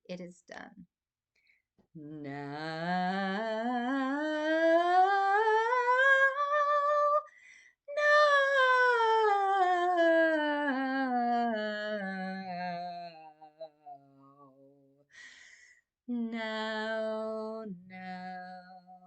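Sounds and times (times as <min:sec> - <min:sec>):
woman singing long wordless tone: 0:02.0 - 0:07.3, 0:07.9 - 0:13.3, 0:16.1 - 0:19.0.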